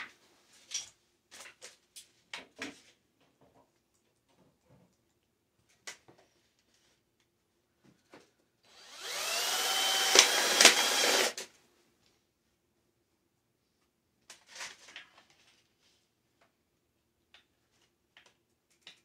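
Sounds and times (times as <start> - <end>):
power drill whining: 8.7 - 11.5.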